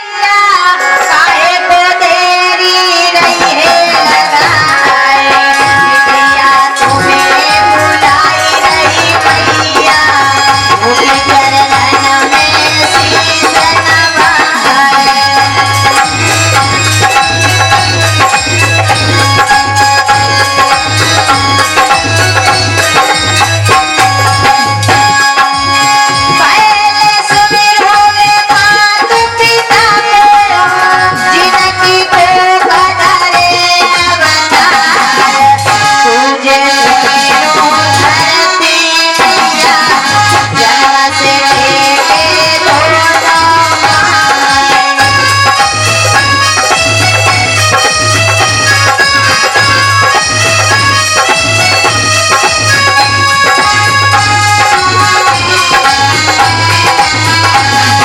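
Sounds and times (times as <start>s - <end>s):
hand drum beats: 2.3s - 36.3s, 36.9s - 58.0s
folk melody line: 6.9s - 26.8s.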